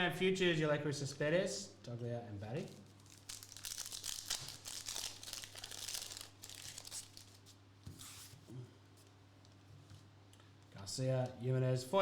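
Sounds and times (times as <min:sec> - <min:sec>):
foil wrapper crinkling and tearing: 0:02.7 - 0:07.6.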